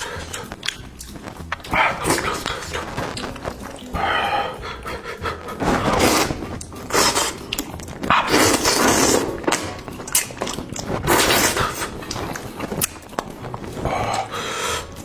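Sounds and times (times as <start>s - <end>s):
person slurping while eating: 0.0s - 0.7s, 1.5s - 12.6s.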